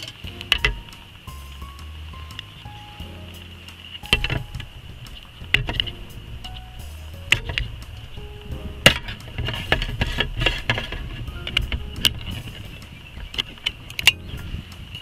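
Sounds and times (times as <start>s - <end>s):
campfire crackling and popping: 3.1s - 15.0s.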